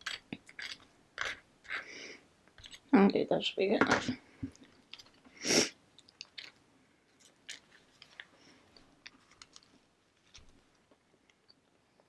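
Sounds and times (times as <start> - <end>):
chewing with wet mouth clicks: 6.0 - 6.6.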